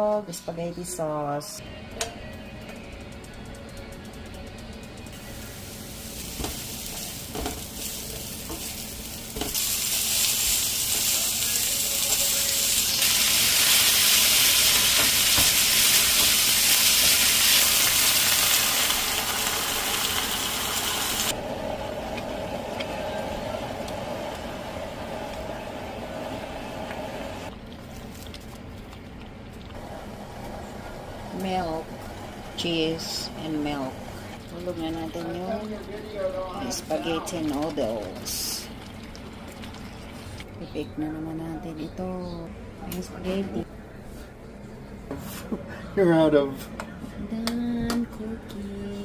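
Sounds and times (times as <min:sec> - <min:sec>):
meat sizzling in a pan: 0:05.4 - 0:21.3.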